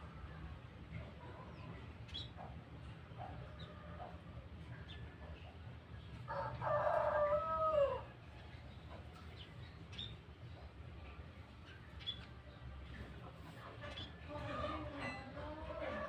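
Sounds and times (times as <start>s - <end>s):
rooster crowing: 6.3s - 8.1s
faint high bird chirps: 11.6s - 12.3s.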